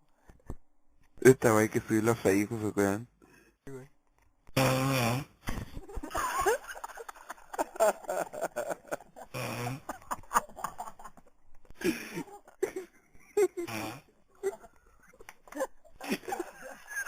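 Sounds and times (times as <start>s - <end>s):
stifled giggling: 5.6s - 17.0s.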